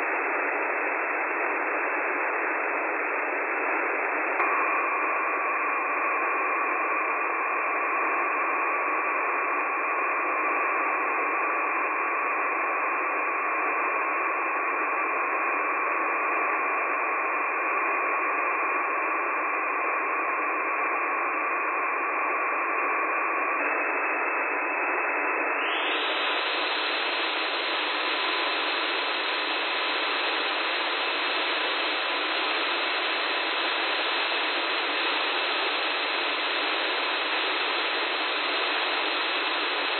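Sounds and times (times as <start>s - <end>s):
radio static hiss: 23.4s - 39.9s
radio whistle tones: 23.4s - 39.9s.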